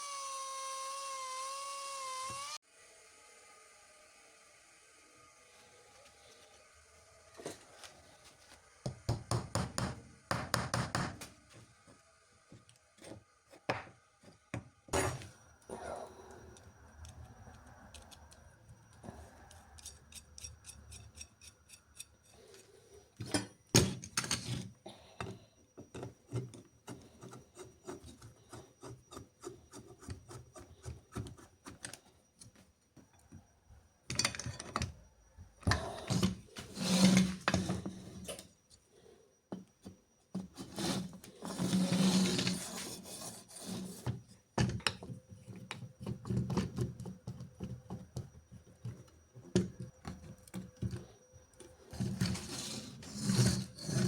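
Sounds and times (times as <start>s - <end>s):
hand tool scraping wood: 35.9s - 38.4s, 40.3s - 44.2s, 51.9s - 54.0s.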